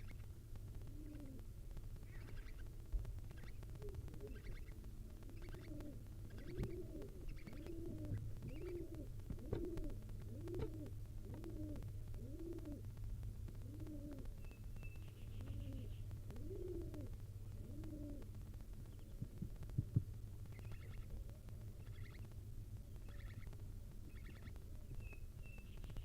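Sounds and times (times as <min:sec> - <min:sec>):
dove cooing: 0:00.8 - 0:01.5, 0:03.3 - 0:12.9, 0:13.6 - 0:14.4, 0:15.2 - 0:18.4, 0:23.0 - 0:24.5.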